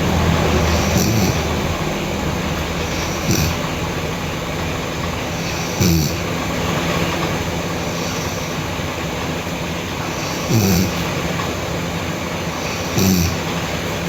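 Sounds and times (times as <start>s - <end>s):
girl snoring: 0.0s - 1.8s, 2.8s - 3.8s, 5.4s - 6.3s, 10.1s - 11.2s, 12.6s - 13.6s
steady rushing background noise: 0.0s - 14.0s.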